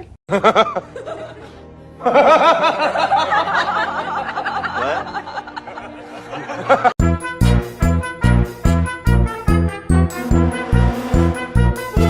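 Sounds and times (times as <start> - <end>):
many people laughing: 0.3 - 7.0
music: 0.5 - 12.0.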